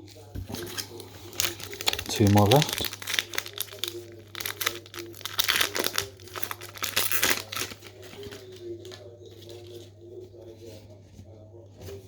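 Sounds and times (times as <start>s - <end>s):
wrapper tearing and crinkling: 0.5s - 9.0s.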